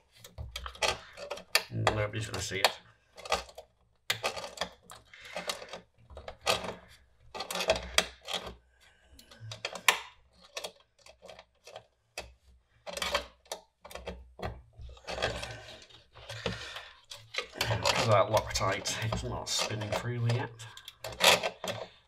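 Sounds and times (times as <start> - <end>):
pliers clicking and scraping on metal: 17.1 - 22.0.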